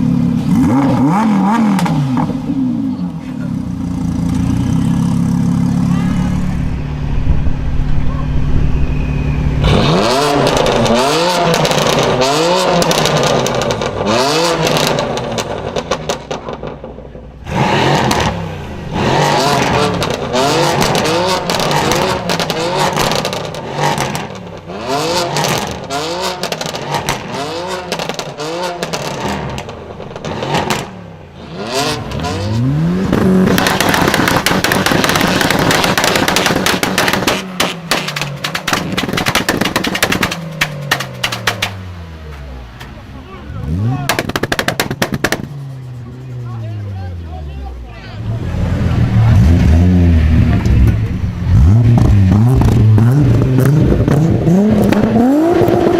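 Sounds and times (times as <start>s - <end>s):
car engine revving: 0.0s - 55.9s
exhaust crackles and pops: 19.6s - 31.0s, 32.0s - 43.0s, 44.0s - 46.4s, 50.2s - 55.9s.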